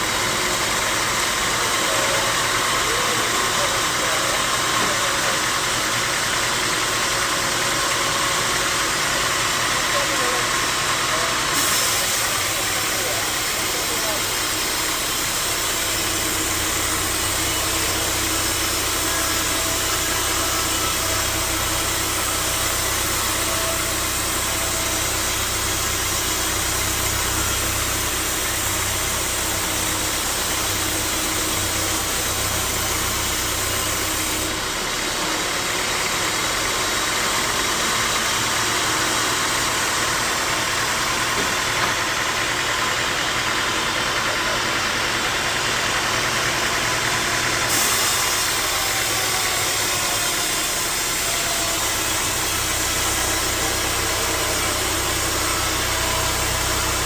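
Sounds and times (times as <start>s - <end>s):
sawmill machinery noise: 0.0s - 57.0s.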